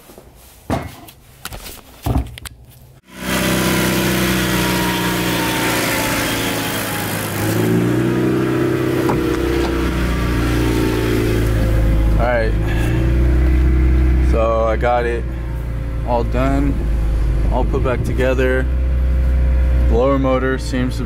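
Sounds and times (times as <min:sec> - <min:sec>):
car engine idling: 0:03.2 - 0:21.0
knocks and clicks: 0:09.0 - 0:09.9.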